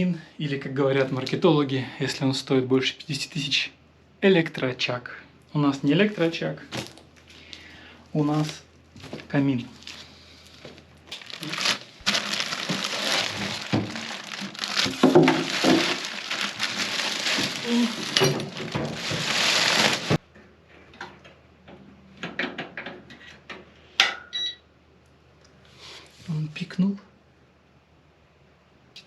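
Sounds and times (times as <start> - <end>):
plastic wrap crackling: 6.7 - 20.2
short electronic beep: 24.3 - 24.6.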